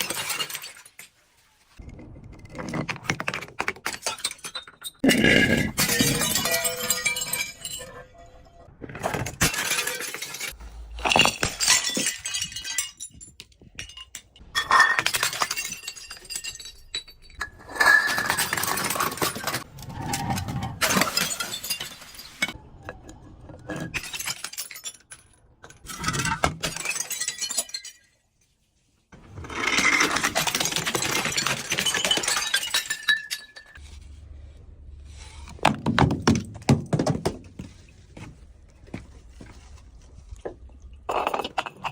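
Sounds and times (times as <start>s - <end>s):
glass bottles crushed and shattering: 0.0s - 1.3s, 2.5s - 22.6s, 23.7s - 28.3s, 29.3s - 33.9s, 40.5s - 41.9s.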